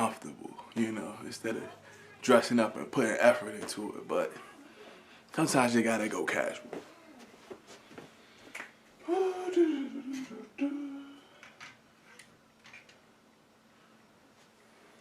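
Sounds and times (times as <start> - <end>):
man humming: 9.0 - 11.4.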